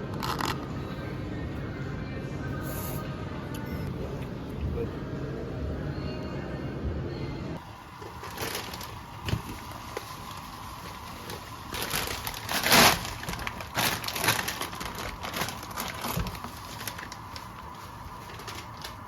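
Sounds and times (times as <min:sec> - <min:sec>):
crinkling and rustling: 0:07.9 - 0:19.0.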